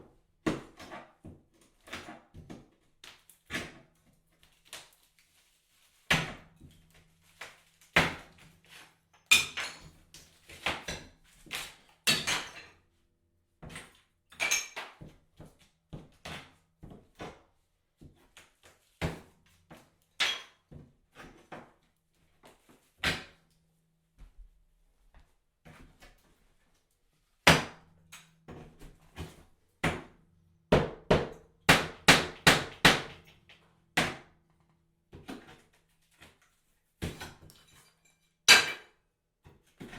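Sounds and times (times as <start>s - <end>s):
hammer breaking tiles: 12.1s - 12.7s, 38.5s - 38.9s.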